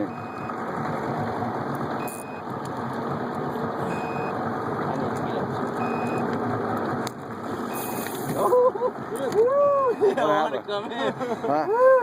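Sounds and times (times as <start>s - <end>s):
short high beeps: 0.0s - 0.5s, 2.0s - 2.4s, 3.9s - 4.4s, 5.8s - 6.2s, 7.7s - 8.1s.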